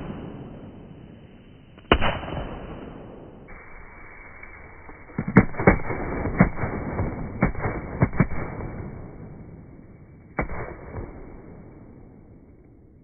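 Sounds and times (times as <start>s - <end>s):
firecrackers banging: 0.0s - 9.1s.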